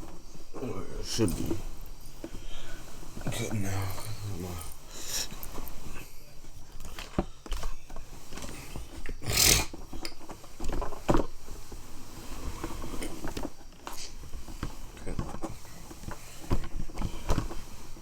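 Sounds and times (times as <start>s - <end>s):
short rustle: 0.0s - 18.0s
handling knocks and clicks: 5.4s - 11.8s.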